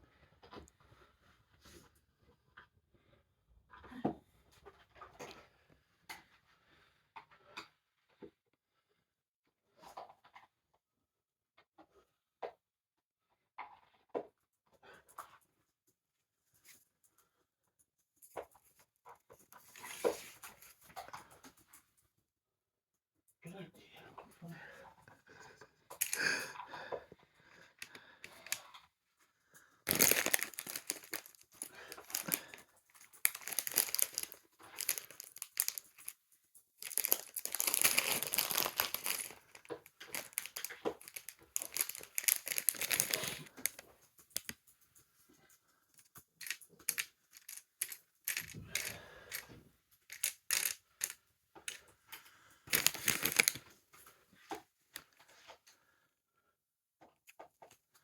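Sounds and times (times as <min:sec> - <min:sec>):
plastic packaging tearing and crinkling: 0:29.9 - 0:32.6, 0:33.2 - 0:36.1, 0:36.8 - 0:43.8, 0:52.7 - 0:53.6
metallic clinks: 0:33.3 - 0:36.1, 0:46.4 - 0:49.4.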